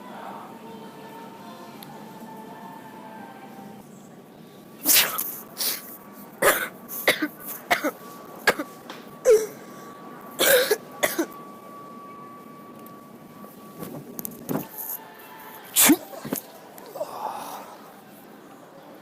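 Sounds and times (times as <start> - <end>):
person coughing: 4.9 - 5.8, 6.4 - 8.7, 9.3 - 9.6, 10.4 - 11.3
person clearing throat: 6.4 - 8.7, 9.3 - 9.6, 10.4 - 11.3.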